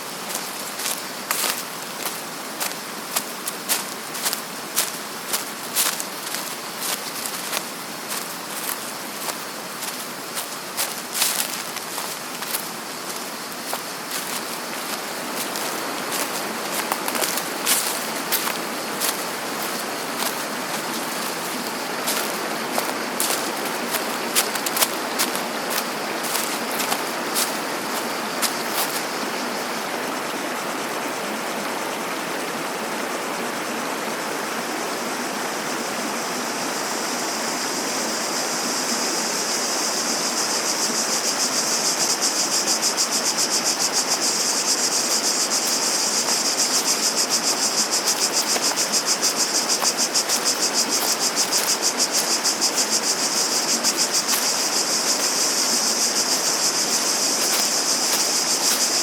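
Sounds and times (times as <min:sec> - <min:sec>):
running water rushing: 0:00.0 - 0:29.8, 0:42.0 - 0:59.0
cicadas buzzing: 0:00.0 - 0:33.7, 0:34.4 - 0:59.0.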